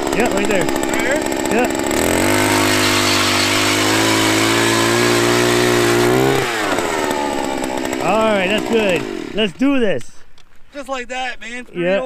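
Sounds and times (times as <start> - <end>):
ice auger engine drilling: 0.0 - 9.6.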